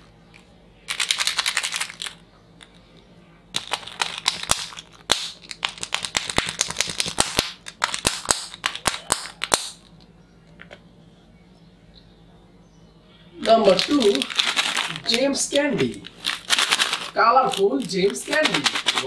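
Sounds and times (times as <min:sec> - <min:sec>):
plastic wrapper crackling: 0:00.9 - 0:02.2, 0:03.6 - 0:09.9, 0:13.4 - 0:19.0.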